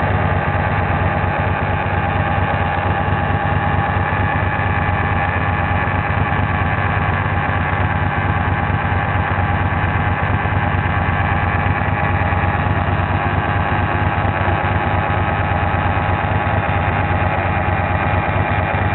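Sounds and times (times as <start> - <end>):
motorcycle engine idling: 0.0 - 18.9.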